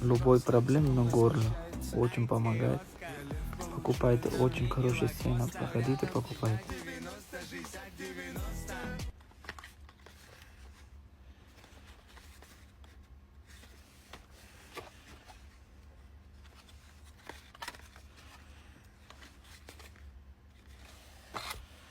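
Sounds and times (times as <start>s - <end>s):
clicks and rustles of handling: 11.5s - 21.9s.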